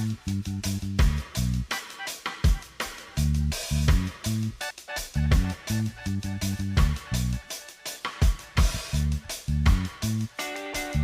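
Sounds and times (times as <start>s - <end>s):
bass line: 0.0s - 1.7s, 3.1s - 7.5s, 8.6s - 11.0s
drum kit: 0.0s - 11.0s.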